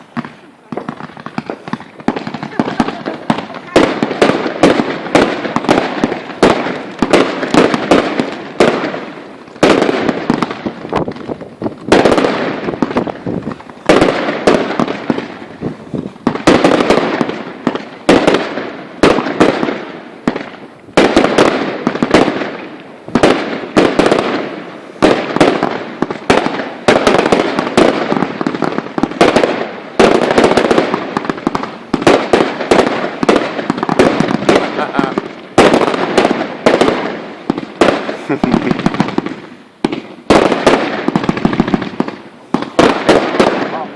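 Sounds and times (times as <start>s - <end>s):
fireworks bangs and crackling: 0.0s - 43.9s
loud firework booms: 0.0s - 43.9s.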